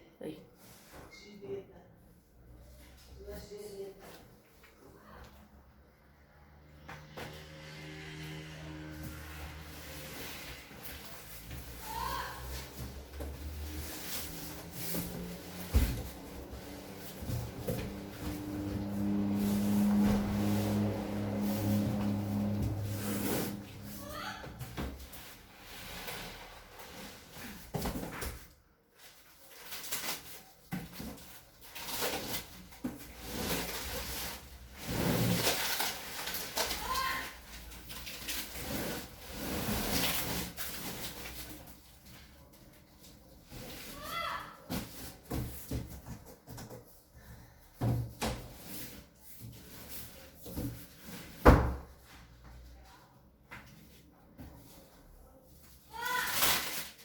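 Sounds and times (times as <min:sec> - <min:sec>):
plastic wrapping rustling: 0:09.4 - 0:24.0, 0:29.0 - 0:44.1, 0:55.9 - 0:57.0.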